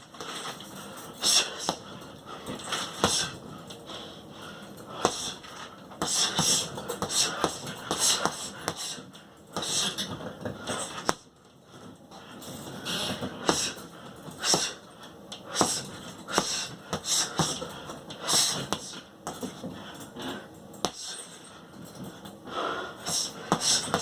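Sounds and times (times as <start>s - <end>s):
sharp hissing exhales: 14.4s - 14.8s, 15.5s - 17.6s, 22.5s - 24.0s
boxing punches landing: 15.5s - 17.7s.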